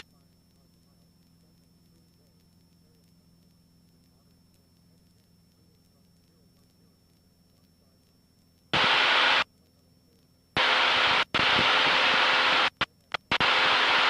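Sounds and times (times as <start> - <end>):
radio static hiss: 0.0 - 14.0
short static clicks: 0.0 - 14.0.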